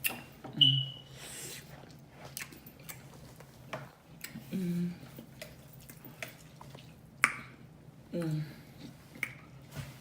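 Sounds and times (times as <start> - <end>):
person humming: 4.5 - 5.0.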